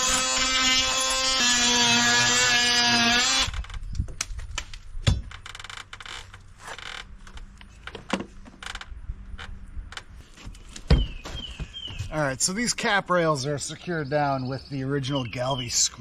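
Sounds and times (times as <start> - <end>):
power tool whining: 0.0 - 3.8.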